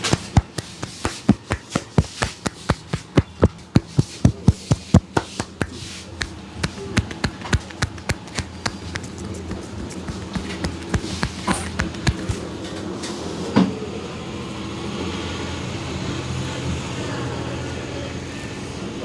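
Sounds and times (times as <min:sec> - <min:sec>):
hands tapping and slapping body: 0:00.0 - 0:12.5.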